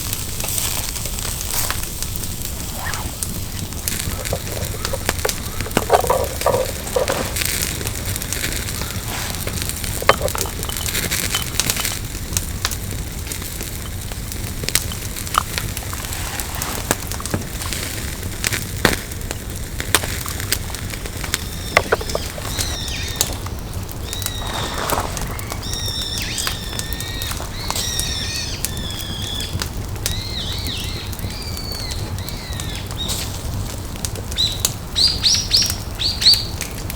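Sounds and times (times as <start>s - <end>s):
campfire crackling and popping: 0.0s - 36.9s
high chirps: 8.7s - 12.6s.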